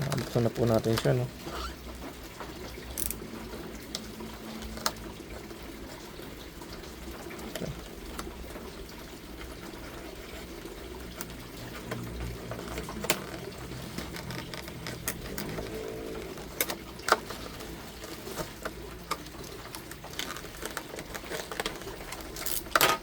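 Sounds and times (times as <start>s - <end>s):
packaging being opened: 11.2s - 23.0s.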